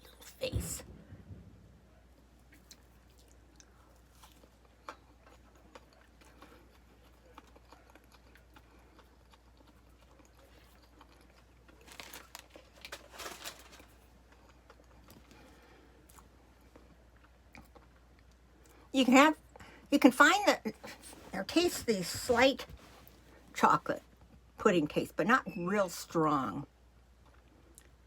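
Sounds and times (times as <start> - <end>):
chewing soft candy: 2.5 - 13.0, 13.8 - 19.8, 27.0 - 28.0.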